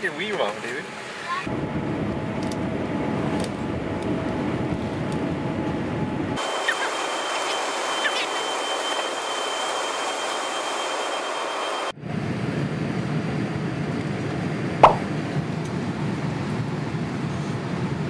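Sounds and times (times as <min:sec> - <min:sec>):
steady high whine: 0:01.5 - 0:12.0
airliner cabin rumble: 0:01.5 - 0:18.0.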